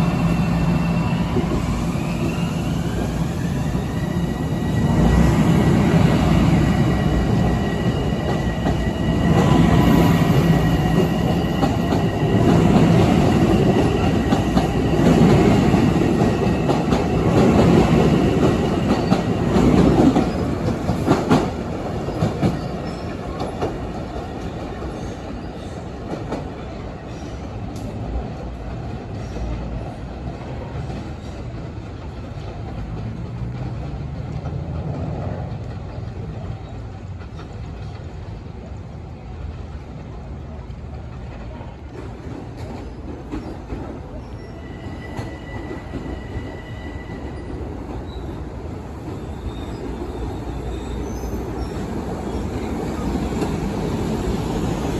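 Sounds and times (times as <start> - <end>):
train high whine: 0.0 - 26.7, 41.4 - 54.9
train rumble: 0.0 - 54.9.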